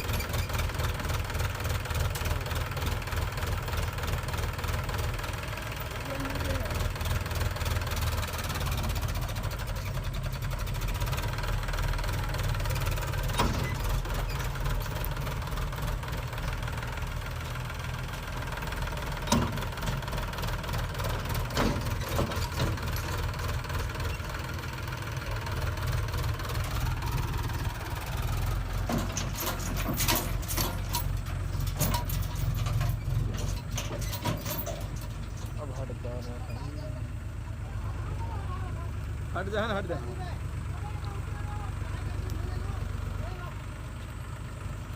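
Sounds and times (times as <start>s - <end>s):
diesel engine running: 0.0s - 44.9s
sharp metal clanks: 28.8s - 36.0s.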